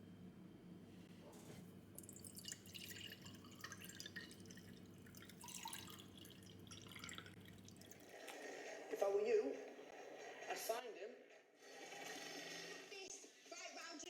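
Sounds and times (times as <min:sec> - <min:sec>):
water dripping and splashing: 0:02.0 - 0:08.1.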